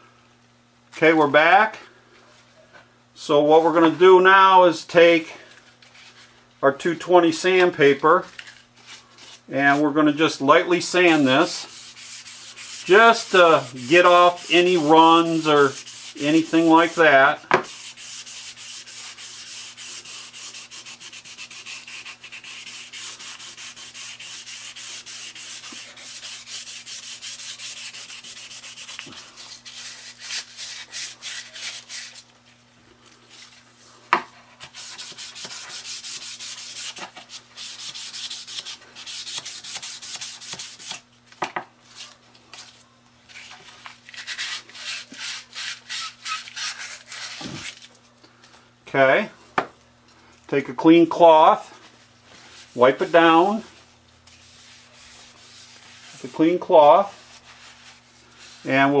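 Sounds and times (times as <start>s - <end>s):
sandpaper rubbing on wood: 11.0s - 32.2s, 34.6s - 41.0s, 44.2s - 47.4s, 54.4s - 58.8s.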